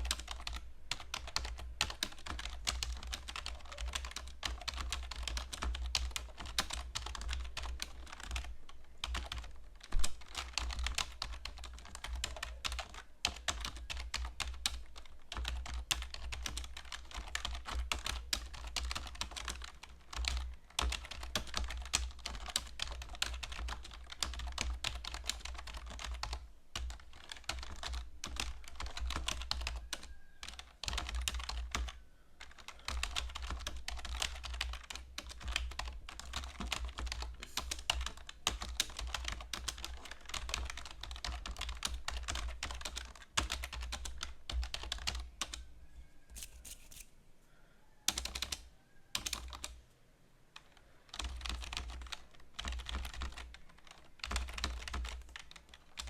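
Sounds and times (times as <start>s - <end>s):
fast keyboard typing: 0.0s - 45.7s, 48.1s - 49.8s, 50.6s - 56.0s.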